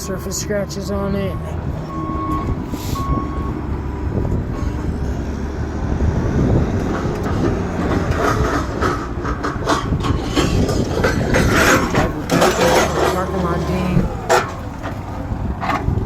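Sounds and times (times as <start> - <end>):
heavy vehicle rumbling: 0.0 - 16.0
rattling and clanking knocks: 6.9 - 16.0.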